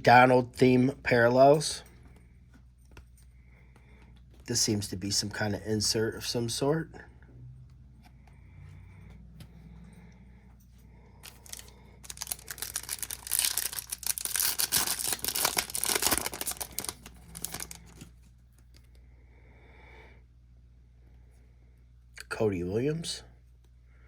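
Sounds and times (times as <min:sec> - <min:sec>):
wrapper being torn and crinkled: 0:11.2 - 0:18.1.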